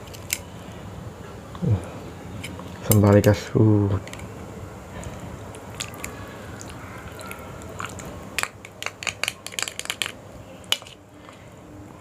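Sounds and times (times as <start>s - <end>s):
utensils clicking against bowl: 5.8s - 11.0s.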